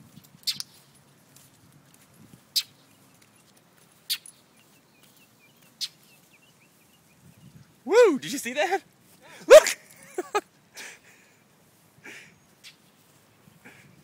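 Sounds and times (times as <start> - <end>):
bird alarm calls: 2.5 - 2.9, 4.1 - 4.4, 5.5 - 6.8.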